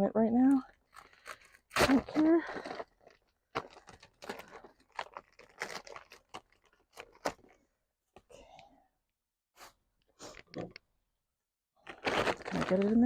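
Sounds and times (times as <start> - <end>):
plastic wrapper crinkling: 0.7 - 7.6, 11.8 - 13.0
plastic wrapper snapping: 0.9 - 7.6, 11.8 - 13.0.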